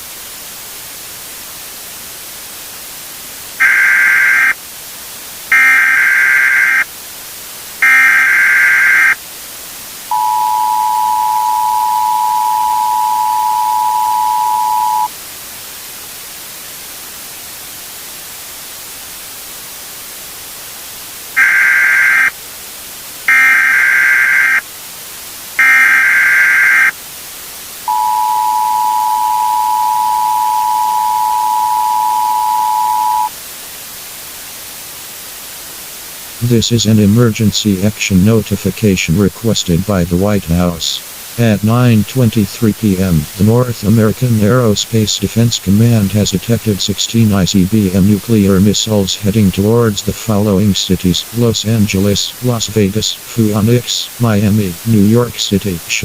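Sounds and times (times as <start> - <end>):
static hiss: 0.0 - 56.0
screeching data bursts: 3.6 - 4.6, 5.5 - 6.9, 7.8 - 9.2, 10.1 - 15.1, 21.4 - 22.3, 23.3 - 24.6, 25.6 - 27.0, 27.9 - 33.4
two-tone attention signal: 5.5 - 6.8, 7.8 - 9.2, 10.1 - 15.1, 23.3 - 24.6, 25.6 - 26.9, 27.9 - 33.3.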